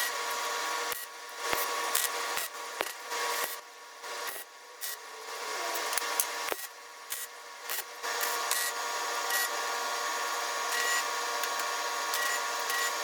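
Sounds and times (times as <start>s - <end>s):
welding arc crackling: 0.0s - 3.6s.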